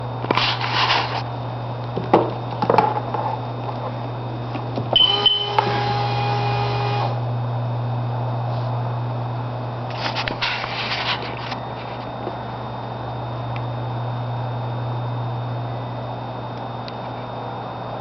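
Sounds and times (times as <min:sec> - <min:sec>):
electronic buzzer tone: 0:04.9 - 0:07.2
short high beep: 0:05.0 - 0:05.6.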